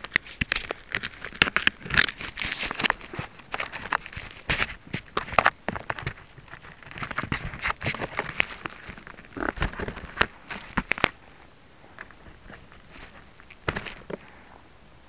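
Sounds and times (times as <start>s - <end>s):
clicks and crackles: 0.0s - 14.5s
rustling: 0.0s - 15.0s.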